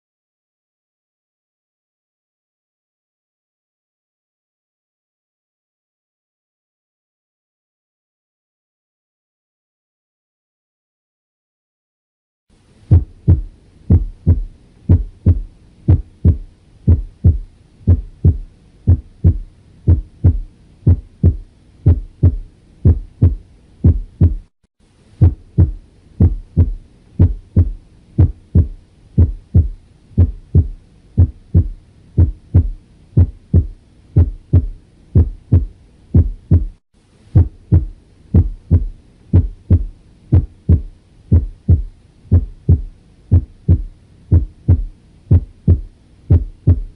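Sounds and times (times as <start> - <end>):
heartbeat lub-dub: 12.9 - 24.5, 25.2 - 36.8, 37.4 - 46.9.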